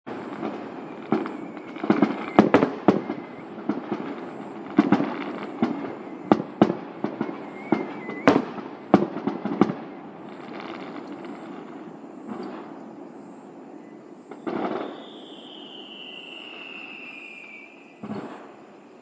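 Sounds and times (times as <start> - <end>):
firework shells bursting: 0.1 - 13.1, 14.2 - 18.9.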